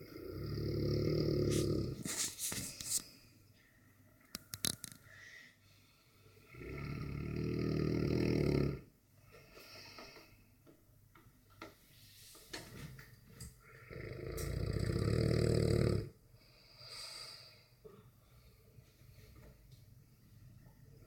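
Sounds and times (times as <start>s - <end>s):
dog snoring: 0.0s - 2.0s, 6.4s - 8.9s, 13.6s - 16.2s.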